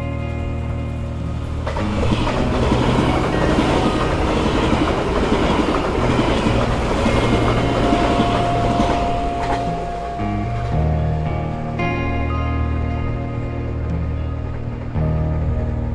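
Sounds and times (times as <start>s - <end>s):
thin steady whine: 0.0s - 15.9s
train wheels clattering on rails: 1.1s - 10.8s.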